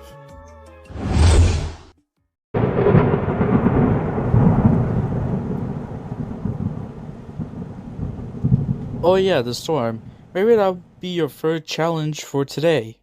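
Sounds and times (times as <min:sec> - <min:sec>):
short burst of noise: 0:01.0 - 0:01.8
thunder rumbling: 0:02.6 - 0:10.6
steady rain: 0:02.6 - 0:11.0.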